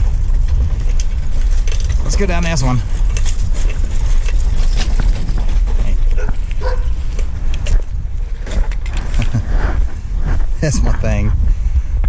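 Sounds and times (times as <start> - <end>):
wind and riding noise: 0.0 - 12.0
dog barking: 6.2 - 7.0.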